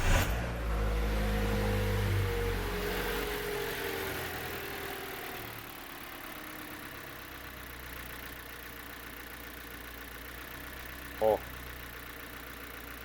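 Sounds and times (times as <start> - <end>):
car engine idling: 0.1 - 13.0.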